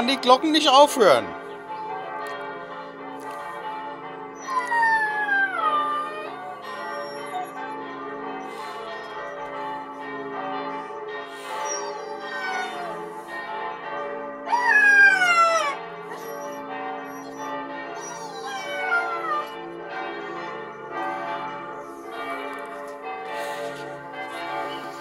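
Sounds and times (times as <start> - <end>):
church bells ringing: 0.0 - 25.0
dog howling: 4.4 - 7.8, 11.4 - 13.1, 14.5 - 19.6.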